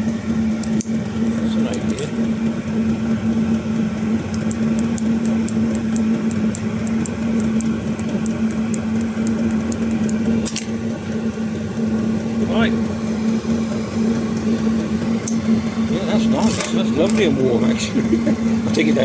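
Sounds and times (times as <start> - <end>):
fast fuel pump ticking: 0.0 - 19.0
heater blower hum and roar: 0.0 - 19.0.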